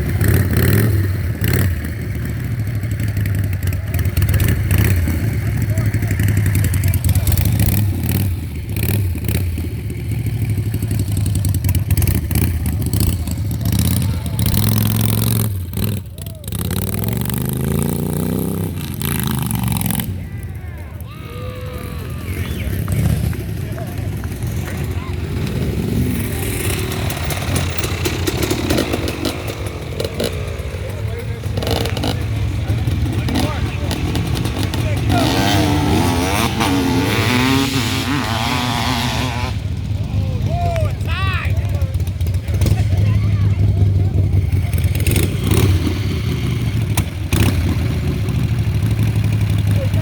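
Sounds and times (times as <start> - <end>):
motorcycle engine running: 0.0 - 50.0
clatter: 22.8 - 35.2.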